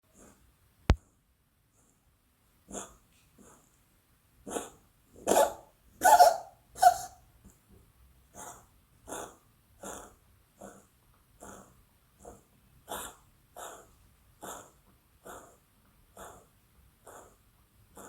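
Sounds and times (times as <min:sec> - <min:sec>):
cat coughing and gagging: 0:05.3 - 0:07.2.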